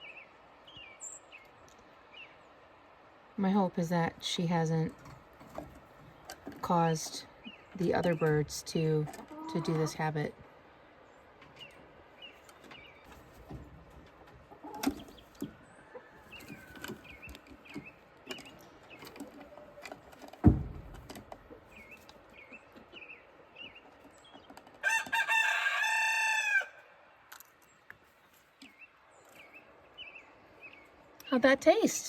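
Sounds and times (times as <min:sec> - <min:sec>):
hens chirping and clucking: 0:00.0 - 0:32.0
loud thump: 0:20.4 - 0:21.1
rooster crowing: 0:24.8 - 0:26.9.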